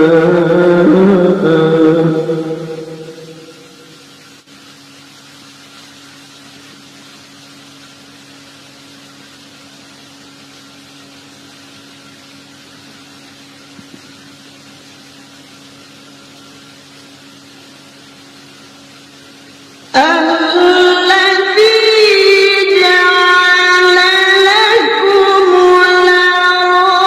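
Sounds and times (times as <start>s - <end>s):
even hiss: 0.0s - 27.0s
low electrical hum: 0.0s - 27.0s.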